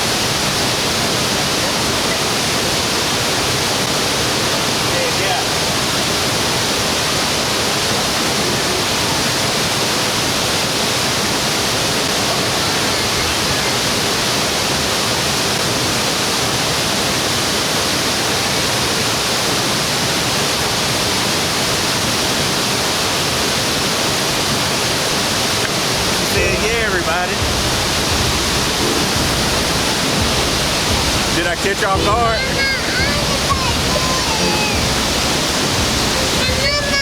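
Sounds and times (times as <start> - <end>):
waterfall roaring: 0.0 - 37.0.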